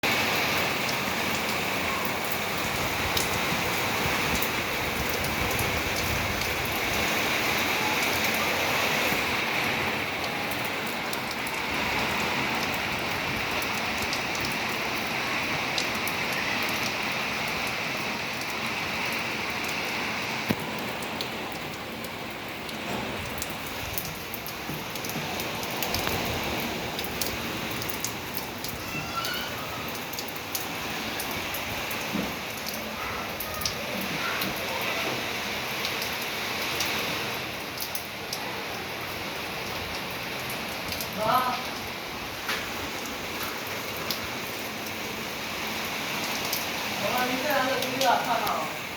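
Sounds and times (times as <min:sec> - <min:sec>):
heavy rain: 0:00.0 - 0:48.9
raindrops pattering: 0:00.0 - 0:48.9.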